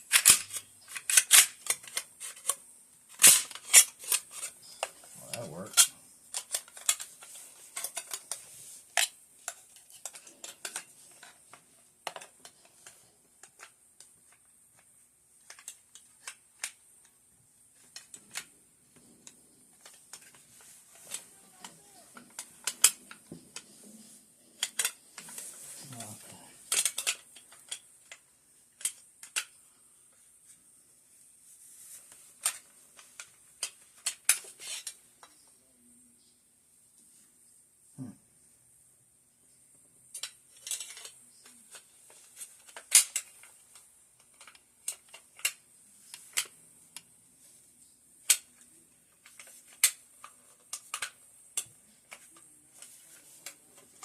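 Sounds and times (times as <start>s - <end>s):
metallic clicks of rifle parts: 0.1s - 17.2s, 17.8s - 23.7s, 24.5s - 29.6s, 40.1s - 47.1s, 48.2s - 54.0s.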